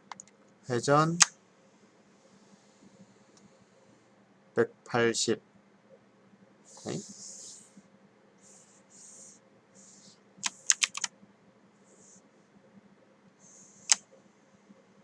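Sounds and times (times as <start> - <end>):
computer keyboard keys clicking: 0.0 - 0.4, 10.4 - 11.1.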